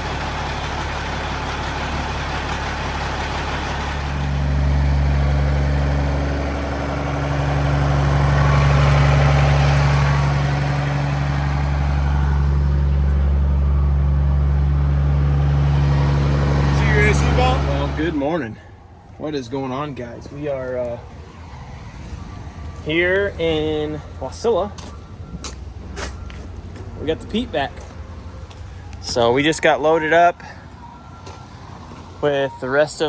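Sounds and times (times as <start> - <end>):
diesel truck engine running: 0.0 - 33.0.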